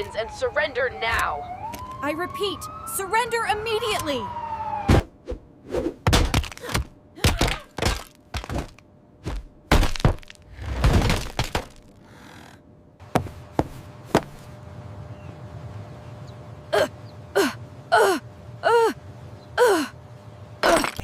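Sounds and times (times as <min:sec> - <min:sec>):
sharp thuds and knocks: 0:06.0 - 0:11.9, 0:13.1 - 0:14.4.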